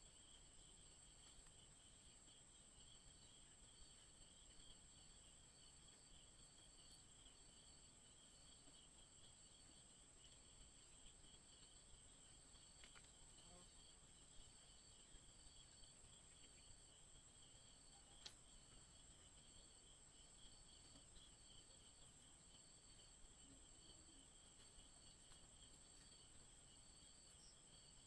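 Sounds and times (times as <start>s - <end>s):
rapid pulsing insect chirp: 0.0s - 28.0s
insects trilling: 12.2s - 28.0s.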